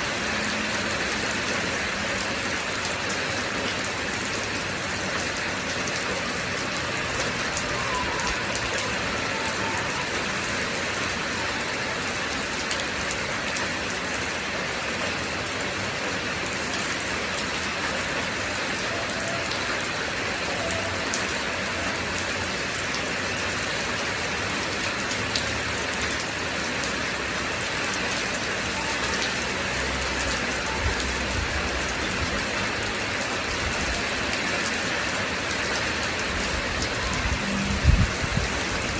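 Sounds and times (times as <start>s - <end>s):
raindrops pattering: 0.0s - 38.9s
steady rainfall: 0.0s - 38.9s.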